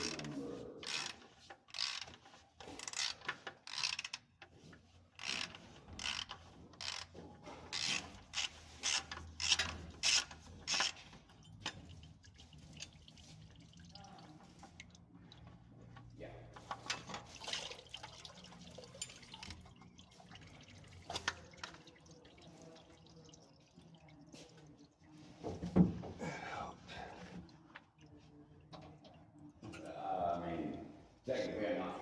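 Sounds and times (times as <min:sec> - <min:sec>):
ratchet wrench clicking: 0:00.8 - 0:02.2, 0:02.8 - 0:04.2, 0:07.7 - 0:11.0.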